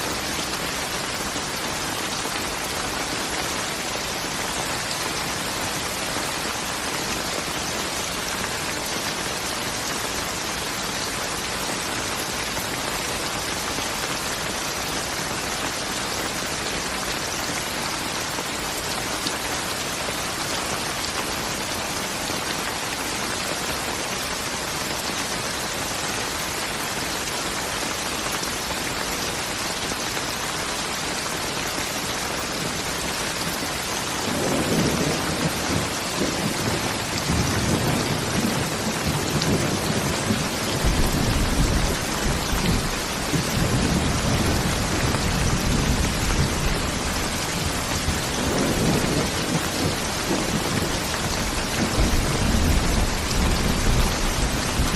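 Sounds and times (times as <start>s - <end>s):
heavy rain hissing: 0.0s - 54.9s
thunder rumbling: 34.2s - 54.9s.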